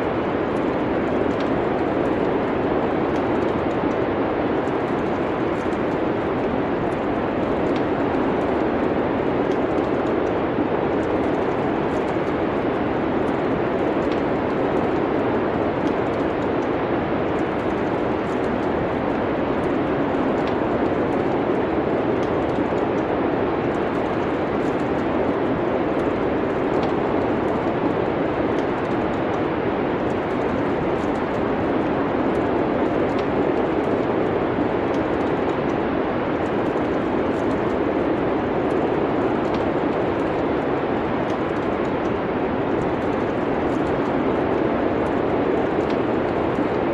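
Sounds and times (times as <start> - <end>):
steady wind of snowstorm: 0.0 - 46.9
wood fire crackling: 0.0 - 46.9.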